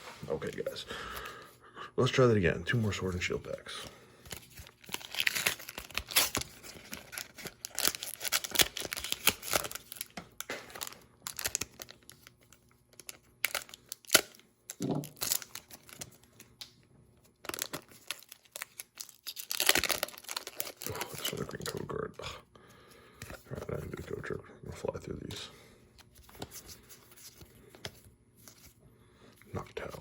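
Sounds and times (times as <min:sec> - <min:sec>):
foil wrapper tearing and crinkling: 0:04.4 - 0:16.2, 0:17.4 - 0:21.8.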